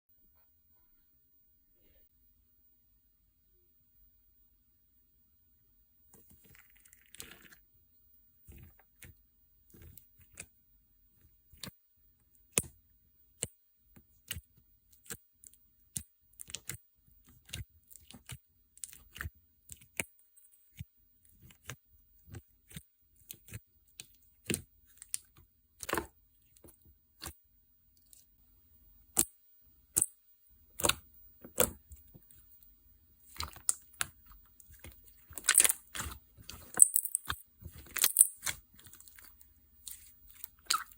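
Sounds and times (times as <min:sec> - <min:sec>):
slime clicking and popping: 0:29.9 - 0:30.1, 0:39.9 - 0:40.9.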